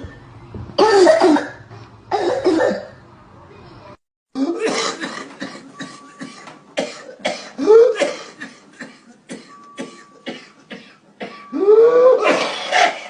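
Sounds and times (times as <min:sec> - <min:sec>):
person coughing rapidly: 0:00.8 - 0:02.9, 0:04.4 - 0:11.4.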